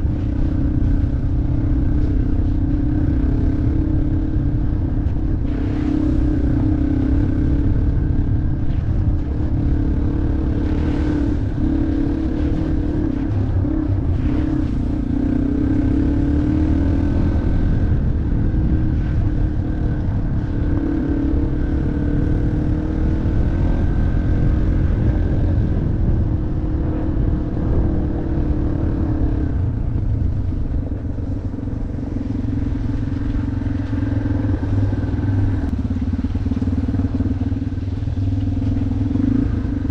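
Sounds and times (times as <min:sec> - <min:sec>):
low rumble: 0:00.0 - 0:39.9
motorcycle engine running: 0:00.0 - 0:39.9.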